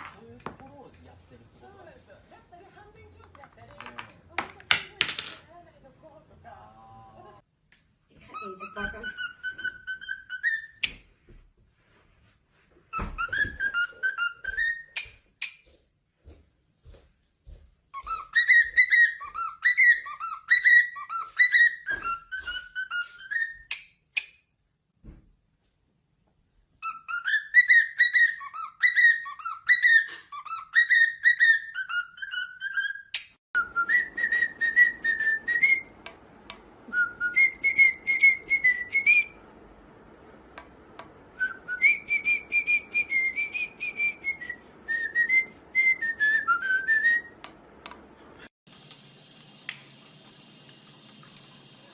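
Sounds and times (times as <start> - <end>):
bird whistling: 8.3 - 11.0, 13.0 - 15.1, 18.0 - 23.8, 26.8 - 36.0, 36.9 - 39.4, 41.4 - 47.4
wavering whistle: 33.6 - 35.9, 36.9 - 39.4, 41.4 - 47.4.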